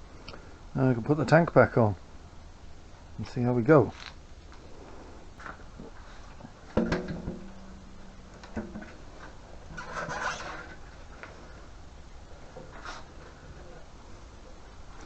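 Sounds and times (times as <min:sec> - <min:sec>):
steady low tone: 0:06.6 - 0:09.8
rubbing and scraping: 0:08.5 - 0:11.2.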